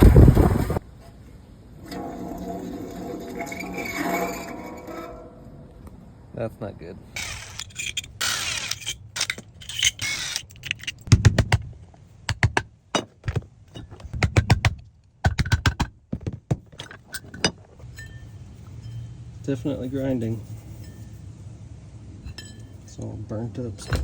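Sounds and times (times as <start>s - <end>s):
metallic clinks and rattles: 16.6s - 21.2s, 22.2s - 23.0s.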